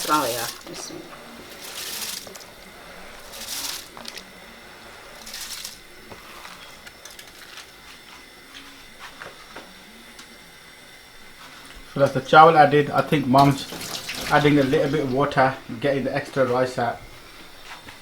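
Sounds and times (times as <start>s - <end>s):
rice pouring into boiling stock: 0.0s - 8.2s, 12.6s - 17.0s.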